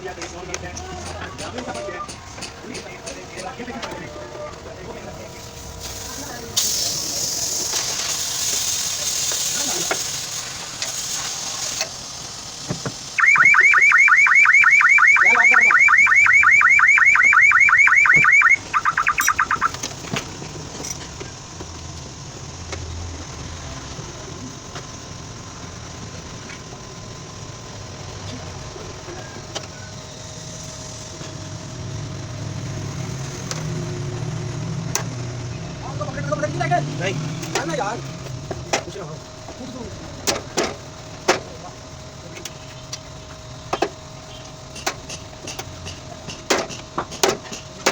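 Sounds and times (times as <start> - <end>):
car alarm chirps: 13.2 - 19.9
car alarm siren warbling: 13.2 - 19.9.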